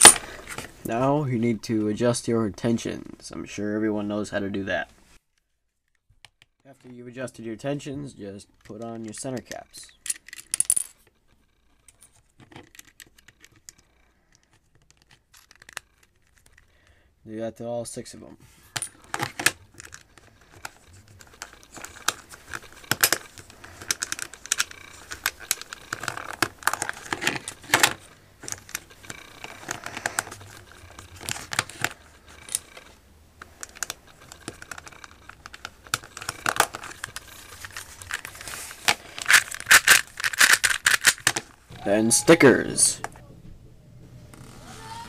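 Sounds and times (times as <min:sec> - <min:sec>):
plastic cube pieces clicking: 0:18.7 - 0:41.5.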